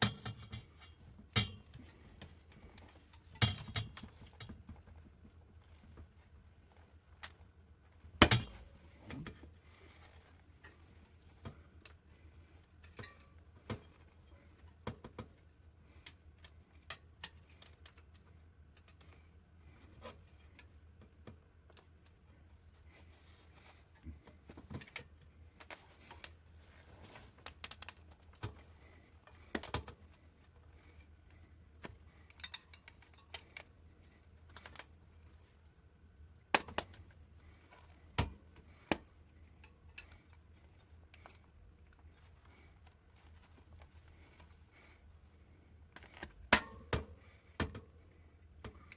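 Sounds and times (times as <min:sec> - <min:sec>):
hands working on wheelchair wheel: 0:00.0 - 0:35.7
low steady hum: 0:00.0 - 0:48.9.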